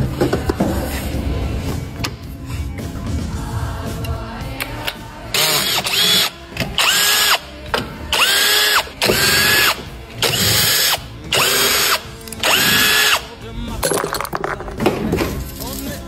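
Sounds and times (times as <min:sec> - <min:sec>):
cordless drill motor whirring: 0:05.4 - 0:07.4.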